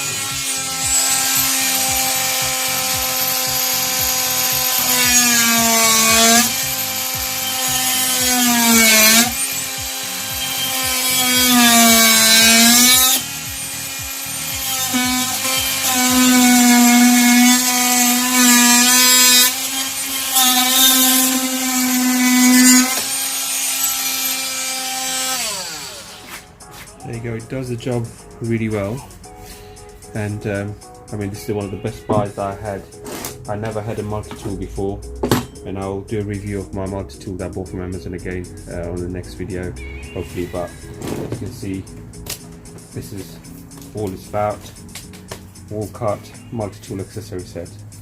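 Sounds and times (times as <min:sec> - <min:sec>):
oscillating multi-tool humming: 0:00.0 - 0:26.3
blade rasping through material: 0:00.0 - 0:27.0.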